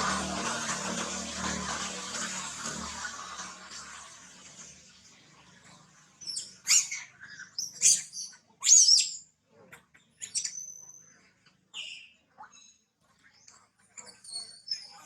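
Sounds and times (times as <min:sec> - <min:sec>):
small animal squeaky chirps: 0:06.2 - 0:09.3, 0:14.0 - 0:15.0.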